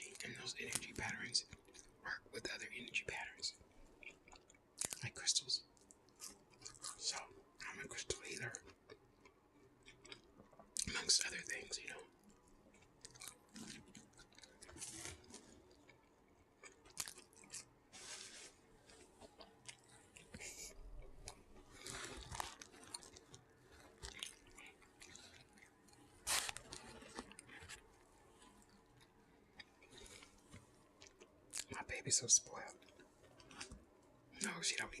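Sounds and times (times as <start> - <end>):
person chewing crunchy food: 4.0 - 5.0, 5.8 - 7.3, 8.5 - 10.9, 12.2 - 31.7.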